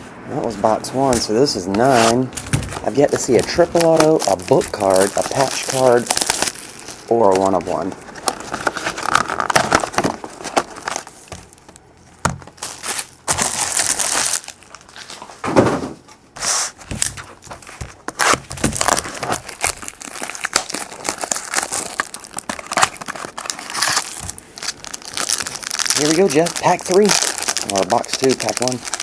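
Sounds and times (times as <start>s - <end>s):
packaging crinkling and tearing: 1.0s - 15.4s, 16.4s - 29.0s.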